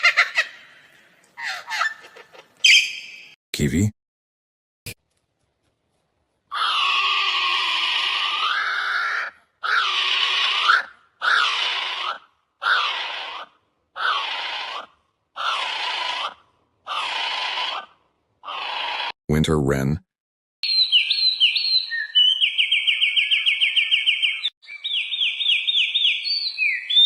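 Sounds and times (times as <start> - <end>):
kiwi bird calling: 1.4 - 3.3, 8.4 - 19.1, 20.6 - 27.0.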